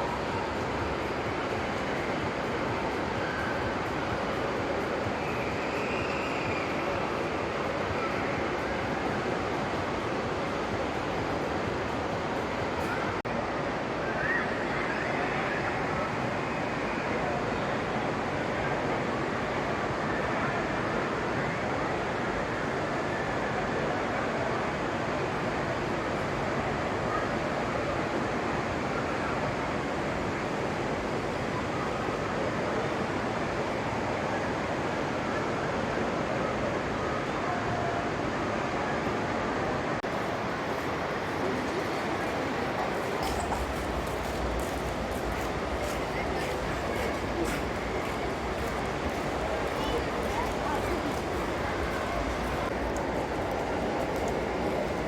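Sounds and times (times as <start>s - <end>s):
indoor ambient rushing noise: 0.0s - 55.0s
steady rushing ambience: 40.0s - 55.0s.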